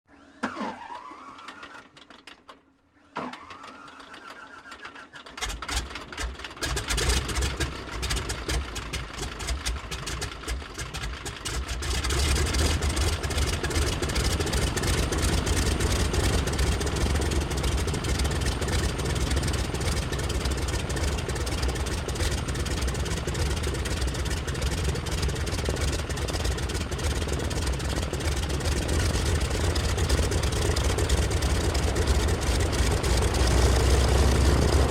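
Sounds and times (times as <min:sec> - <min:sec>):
propeller plane engine running: 0:05.3 - 0:34.9
starter whine: 0:11.7 - 0:34.9.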